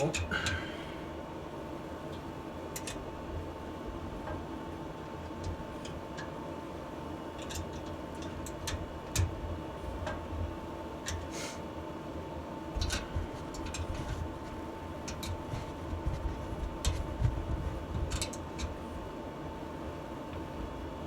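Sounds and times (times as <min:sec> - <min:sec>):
faint steady whine: 0:00.0 - 0:21.0
steady low hum: 0:00.0 - 0:21.0.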